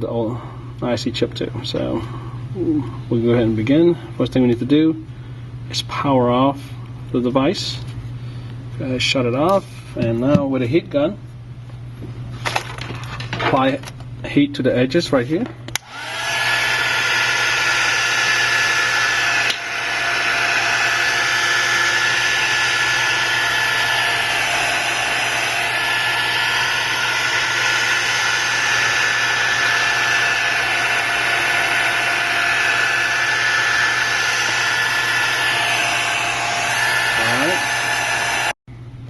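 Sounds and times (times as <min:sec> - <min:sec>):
heat gun blowing air with whine: 0:15.7 - 0:38.6.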